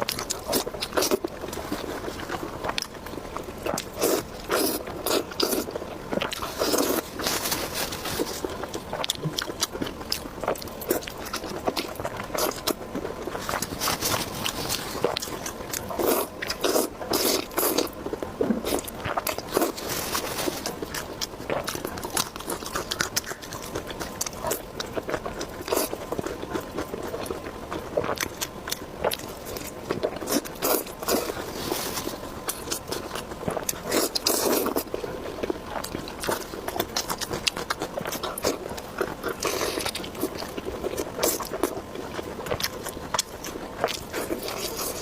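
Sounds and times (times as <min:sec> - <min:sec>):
person chewing crunchy food: 0:00.0 - 0:45.0
scrape: 0:06.4 - 0:08.4, 0:13.4 - 0:15.1, 0:19.6 - 0:20.7, 0:31.1 - 0:32.2.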